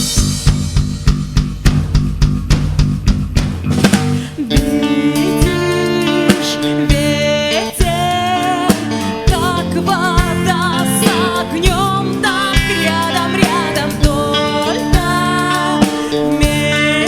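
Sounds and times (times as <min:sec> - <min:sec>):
drums and guitar: 0:00.0 - 0:17.0
woman singing with vibrato: 0:04.2 - 0:17.0.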